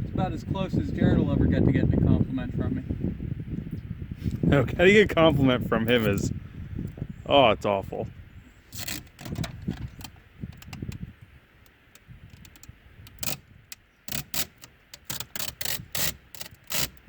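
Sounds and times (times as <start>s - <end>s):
hands clicking and scraping decal: 12.0s - 17.0s.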